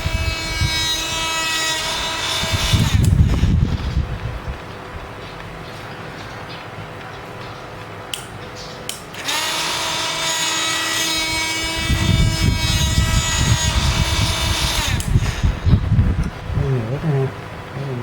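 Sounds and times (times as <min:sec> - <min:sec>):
electric drill motor whine: 0:00.0 - 0:03.9, 0:09.1 - 0:15.9
heavy low rumble: 0:02.5 - 0:05.2, 0:11.8 - 0:18.0.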